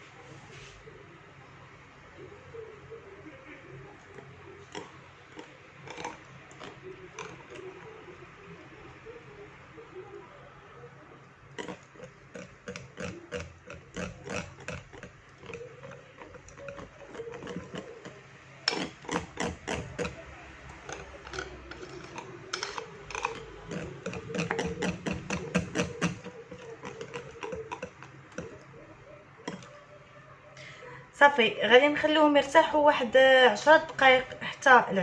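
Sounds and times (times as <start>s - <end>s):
whisk stirring batter in a bowl: 11.5s - 29.8s.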